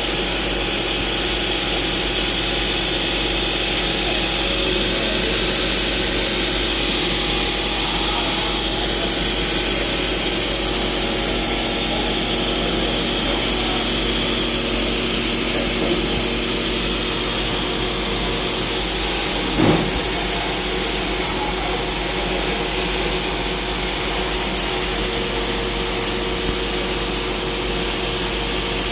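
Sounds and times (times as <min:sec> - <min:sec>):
machine whining while cutting: 0:00.0 - 0:28.9
short knock: 0:19.6 - 0:20.1.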